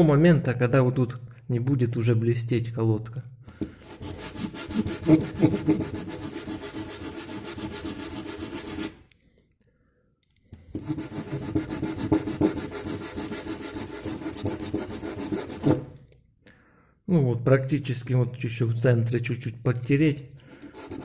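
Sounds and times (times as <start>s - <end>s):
rubber pad rubbed on sandpaper: 3.8s - 9.0s, 10.7s - 15.9s, 20.7s - 21.0s.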